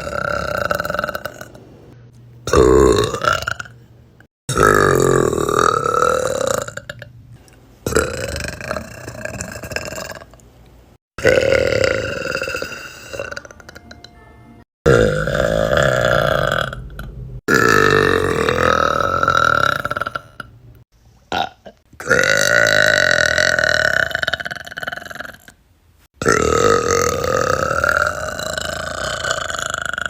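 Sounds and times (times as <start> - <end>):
girls belching: 0.0 - 1.7, 2.5 - 3.7, 11.2 - 14.0, 17.5 - 20.5, 26.2 - 30.0.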